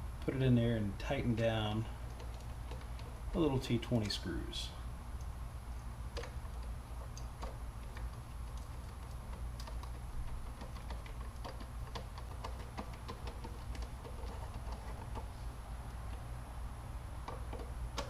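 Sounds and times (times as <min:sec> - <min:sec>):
steady low hum: 0:00.0 - 0:18.0
screwdriver clicking on screws: 0:06.2 - 0:15.3.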